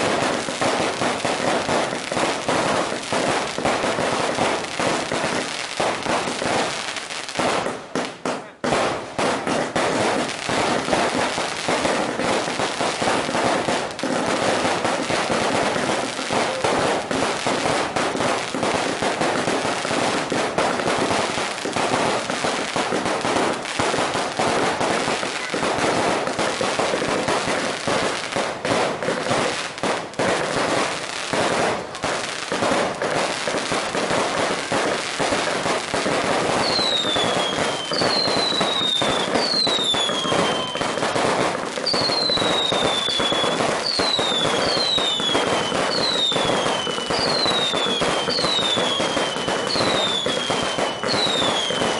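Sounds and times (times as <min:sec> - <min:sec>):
fireworks bangs and crackling: 0:00.0 - 0:51.9
firework whistles: 0:36.4 - 0:51.9.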